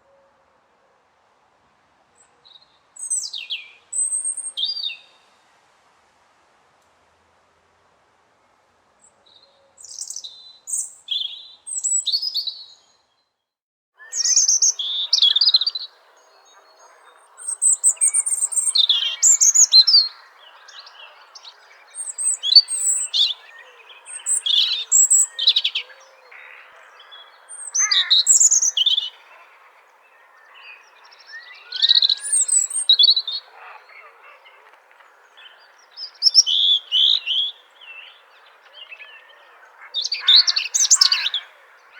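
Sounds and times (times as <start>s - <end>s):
faint background hiss: 0.0s - 13.3s, 14.0s - 41.9s
robin singing: 2.5s - 5.1s, 9.8s - 12.8s, 14.0s - 41.9s.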